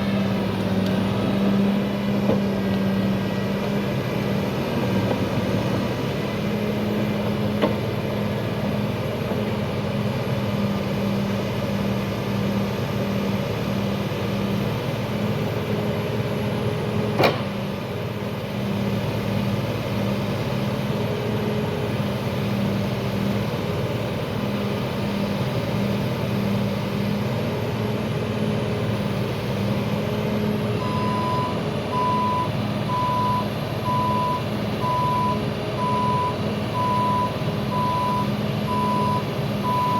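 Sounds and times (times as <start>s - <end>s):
diesel engine running: 0.0s - 39.9s
reversing alarm beeping: 30.8s - 39.9s.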